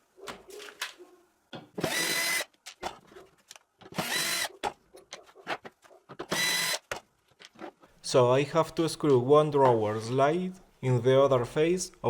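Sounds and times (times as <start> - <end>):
power drill-driver running: 1.8 - 2.5, 3.9 - 4.5, 6.3 - 6.8.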